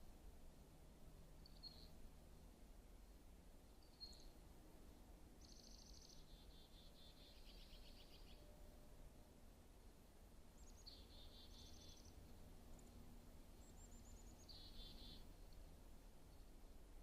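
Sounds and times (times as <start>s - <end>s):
small songbird singing: 1.4s - 2.0s, 3.7s - 4.4s, 5.4s - 8.5s, 10.5s - 15.7s.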